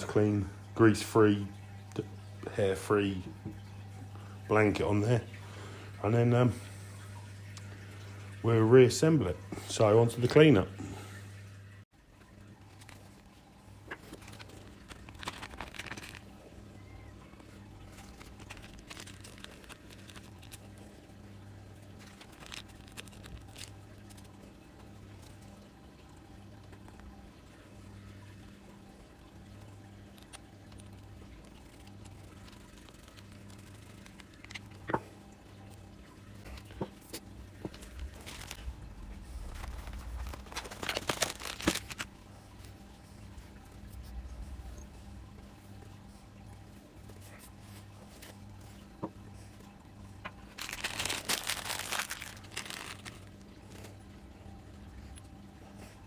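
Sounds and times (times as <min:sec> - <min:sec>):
low hum: 0:00.0 - 0:56.0
packaging crinkling and rustling: 0:12.6 - 0:21.0, 0:21.8 - 0:24.5, 0:30.1 - 0:35.0, 0:36.3 - 0:42.8, 0:50.2 - 0:54.1.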